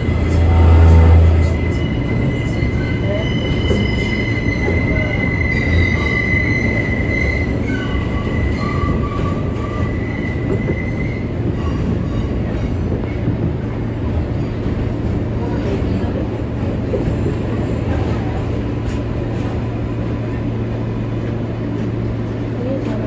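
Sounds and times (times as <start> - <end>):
train wheels rumbling on rail: 0.0 - 23.0
high-pitched wheel squeal: 0.3 - 12.3.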